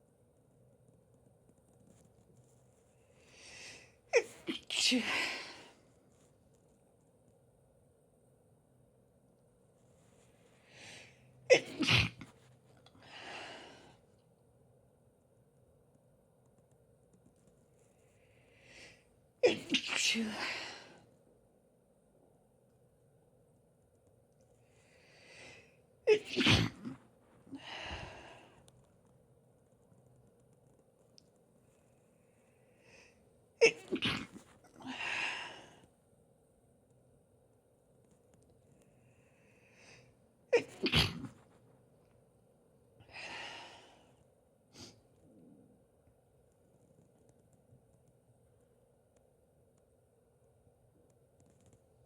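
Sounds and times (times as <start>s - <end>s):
woman sneezing: 4.2s - 5.7s, 11.5s - 12.3s, 19.4s - 20.8s, 26.1s - 27.0s, 33.6s - 35.2s, 40.6s - 41.4s.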